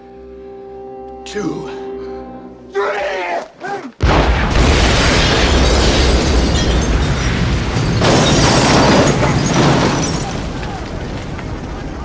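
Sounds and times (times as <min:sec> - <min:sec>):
bomb explosion rumbling: 0:04.0 - 0:12.0.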